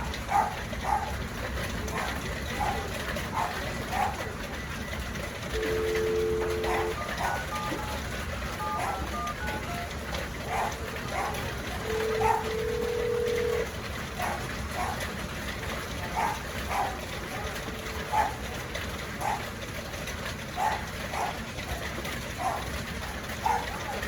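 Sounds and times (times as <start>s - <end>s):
dog barking: 0.2s - 1.2s, 1.9s - 4.3s, 6.6s - 7.6s, 8.7s - 9.1s, 10.4s - 13.0s, 14.2s - 15.1s, 16.1s - 18.5s, 19.2s - 19.5s, 20.6s - 24.0s.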